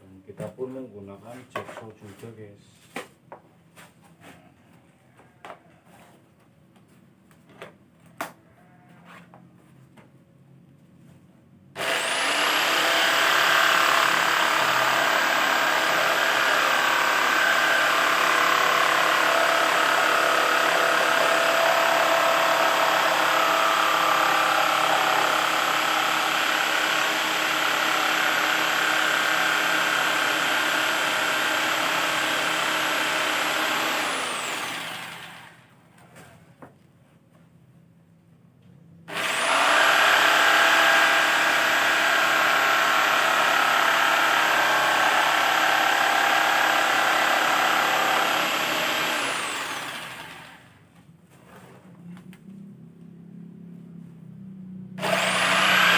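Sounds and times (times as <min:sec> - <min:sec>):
electric jigsaw motor whining: 0:11.8 - 0:35.7, 0:39.1 - 0:50.8, 0:55.0 - 0:55.9.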